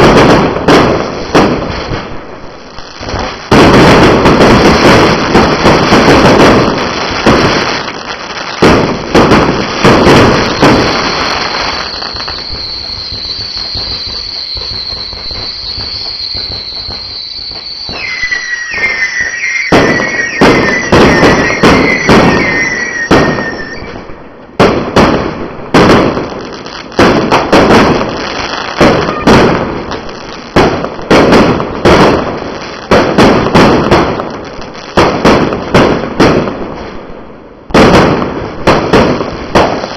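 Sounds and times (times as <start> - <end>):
falling firework whistles: 0.0 - 24.3, 27.4 - 34.2
fireworks bangs: 0.0 - 39.9
fireworks crackle: 0.0 - 39.9.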